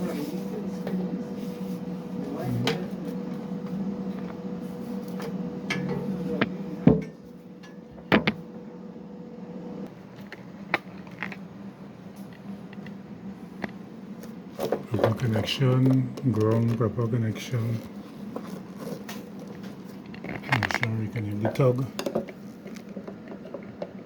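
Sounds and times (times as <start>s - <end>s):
steady hum: 0.0s - 24.0s.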